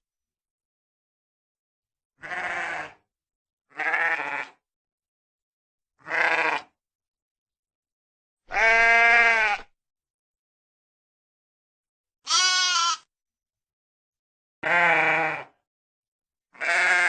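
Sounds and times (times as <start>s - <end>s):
sheep bleating: 2.2s - 3.0s, 3.7s - 4.6s, 6.0s - 6.8s, 8.5s - 9.7s, 12.2s - 13.1s, 14.6s - 15.6s, 16.5s - 17.0s.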